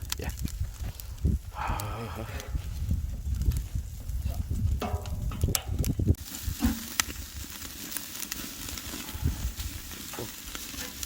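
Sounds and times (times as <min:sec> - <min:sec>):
burning wood popping and crackling: 0:00.0 - 0:11.0
meat sizzling on a grill: 0:06.0 - 0:11.0.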